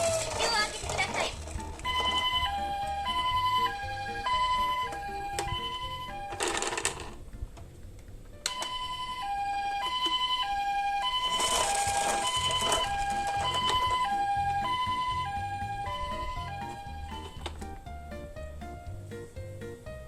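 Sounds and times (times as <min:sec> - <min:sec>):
two-tone ambulance siren: 0:01.8 - 0:07.0, 0:08.5 - 0:17.6.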